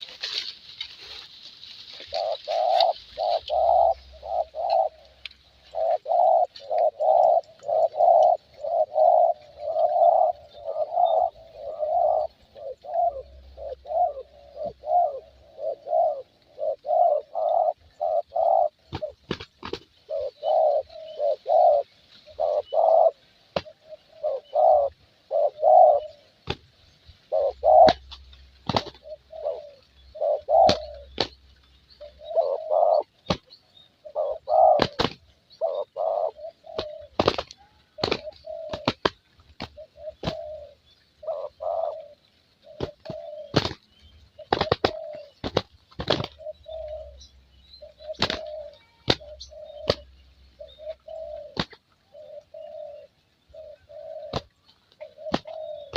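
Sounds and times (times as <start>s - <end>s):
dove cooing: 1.8s - 55.9s.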